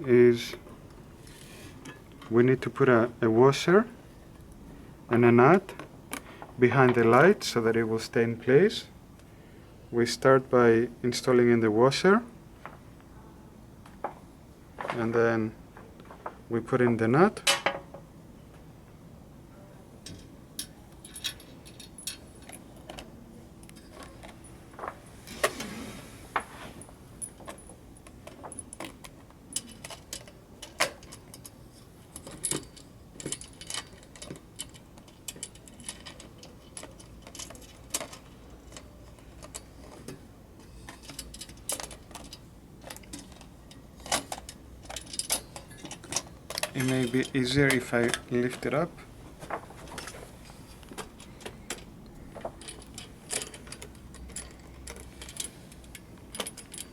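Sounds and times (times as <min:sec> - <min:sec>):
metallic clicks and clinks: 0:20.0 - 0:23.0, 0:27.2 - 0:48.8, 0:51.0 - 0:56.9.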